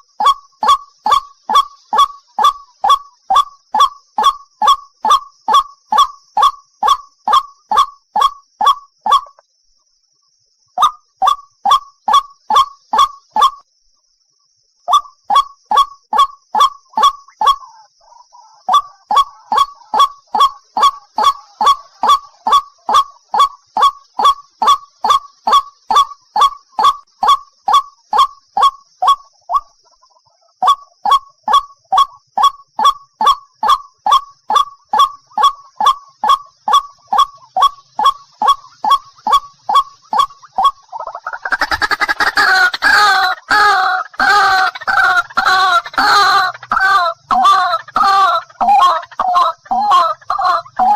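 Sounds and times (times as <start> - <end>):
waterhen honking calls: 18.7 - 29.6, 30.6 - 50.9.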